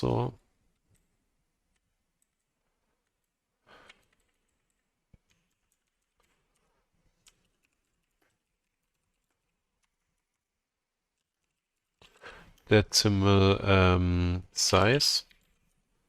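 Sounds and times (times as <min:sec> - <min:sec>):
keyboard typing: 0:00.7 - 0:12.7, 0:15.2 - 0:15.9.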